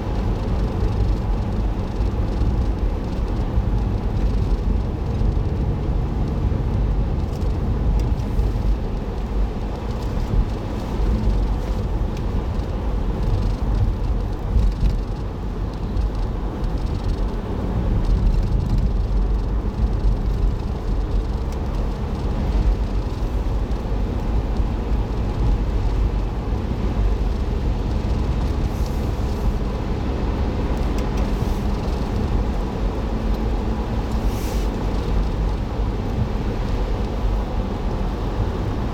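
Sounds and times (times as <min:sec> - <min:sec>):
car road rumble inside cabin: 0:00.0 - 0:38.9.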